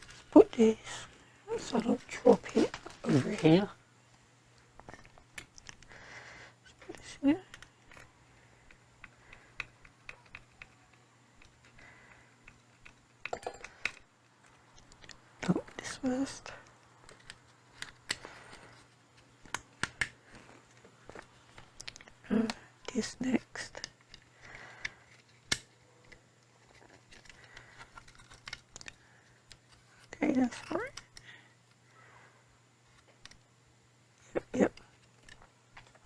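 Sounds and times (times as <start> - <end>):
screwdriver clicking on plastic: 7.5 - 11.8
plastic parts clicking: 7.5 - 15.2, 17.0 - 22.6, 23.8 - 31.3, 34.7 - 36.0.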